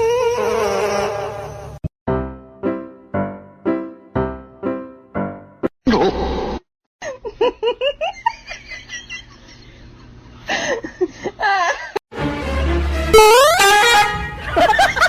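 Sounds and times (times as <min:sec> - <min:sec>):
person laughing: 0:05.9 - 0:06.4, 0:07.0 - 0:12.0, 0:14.4 - 0:15.0.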